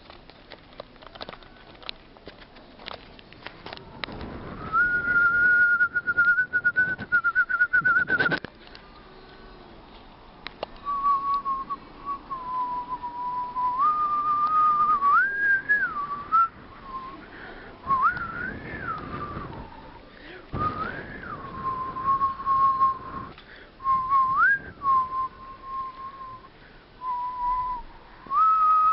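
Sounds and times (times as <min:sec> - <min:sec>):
whistling tone: 0:04.4 - 0:08.4, 0:10.8 - 0:17.2, 0:17.8 - 0:20.0, 0:20.6 - 0:28.9.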